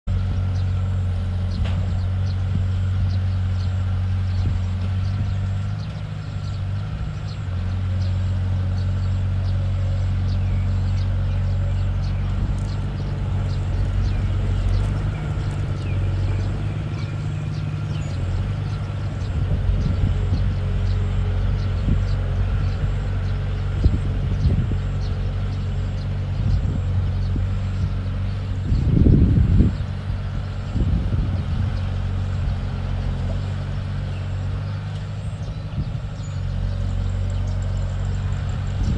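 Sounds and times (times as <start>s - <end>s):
bulldozer diesel engine running: 0.0s - 38.9s.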